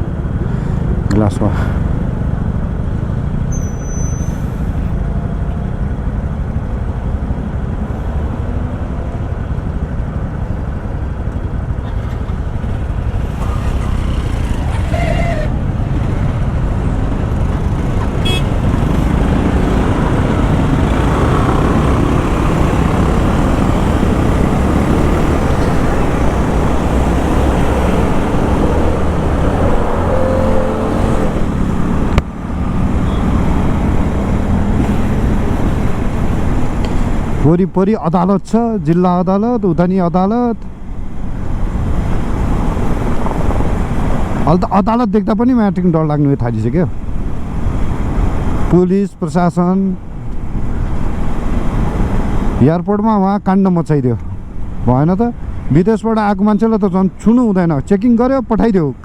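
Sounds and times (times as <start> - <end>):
vehicle engines passing: 0.0 - 59.0
short horn toot: 18.2 - 18.6.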